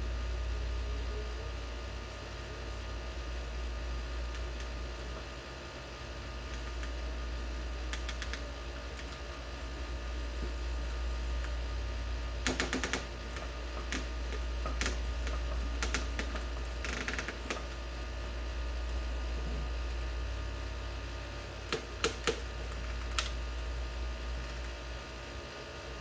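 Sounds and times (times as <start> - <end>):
low hum: 0.0 - 25.0.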